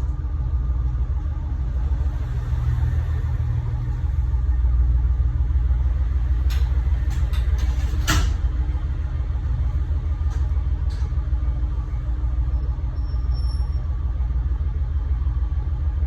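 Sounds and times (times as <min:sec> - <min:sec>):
diesel engine idling: 0:00.0 - 0:16.0.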